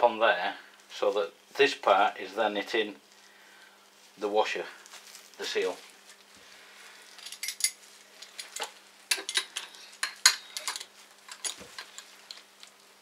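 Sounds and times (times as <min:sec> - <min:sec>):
metal parts clinking: 0:07.2 - 0:12.1.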